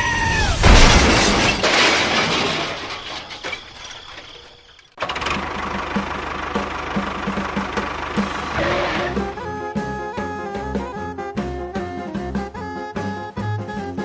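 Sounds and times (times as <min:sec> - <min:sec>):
loud crashing noise: 0:00.4 - 0:04.6, 0:08.2 - 0:09.4
engine running steadily: 0:05.0 - 0:10.8.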